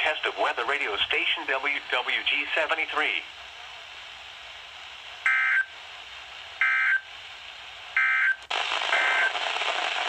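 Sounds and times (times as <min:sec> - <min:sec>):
radio hiss: 0:00.0 - 0:10.0.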